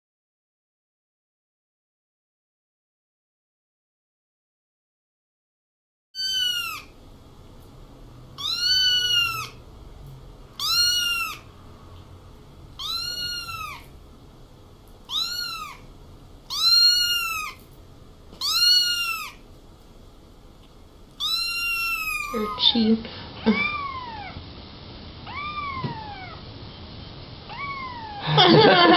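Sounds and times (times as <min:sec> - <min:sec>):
kitten meowing: 0:06.2 - 0:06.9, 0:08.4 - 0:09.6, 0:10.6 - 0:11.5, 0:12.8 - 0:13.9, 0:15.1 - 0:15.9, 0:16.5 - 0:17.6, 0:18.4 - 0:19.4, 0:21.2 - 0:22.9, 0:23.5 - 0:24.4, 0:25.2 - 0:26.4, 0:27.5 - 0:28.4.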